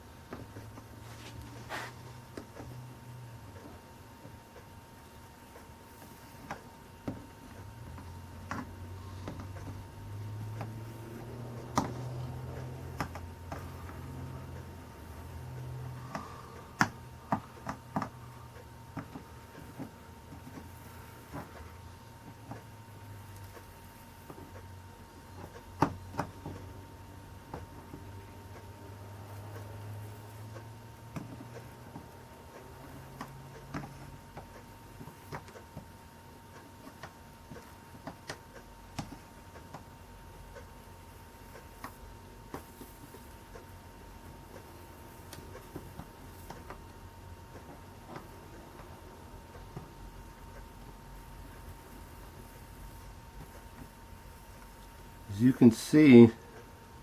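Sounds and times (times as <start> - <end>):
low steady hum: 0.0 - 57.0.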